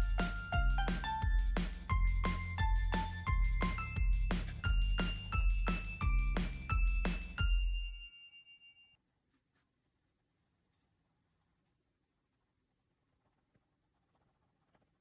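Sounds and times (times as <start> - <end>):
colouring pencil scratching on paper: 9.0 - 15.0.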